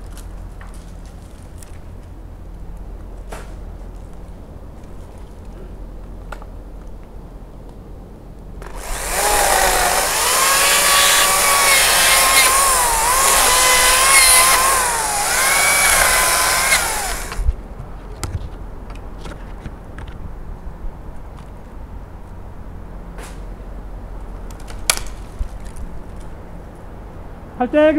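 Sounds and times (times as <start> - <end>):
chainsaw cutting wood: 8.6 - 17.5.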